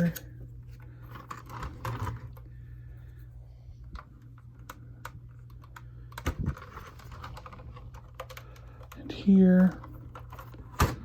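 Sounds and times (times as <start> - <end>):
plastic parts clicking and tapping: 3.8 - 11.0.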